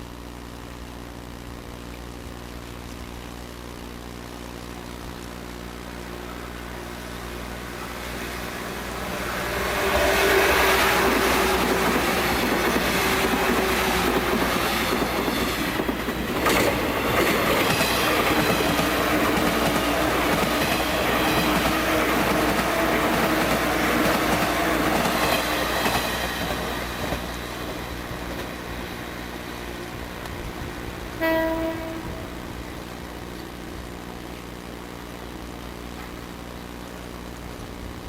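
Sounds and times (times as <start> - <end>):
train humming tone: 3.4 - 38.0
train wheels clattering over rails: 8.4 - 28.6.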